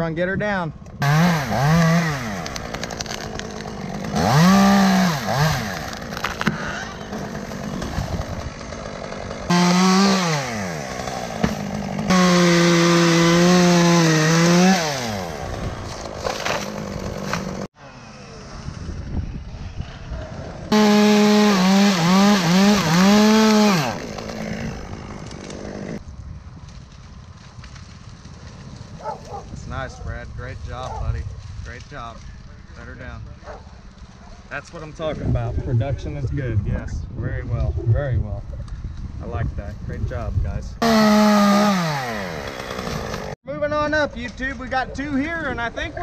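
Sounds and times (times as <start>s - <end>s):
chainsaw cutting wood revving: 1.0s - 18.3s, 20.6s - 26.0s, 40.8s - 43.4s.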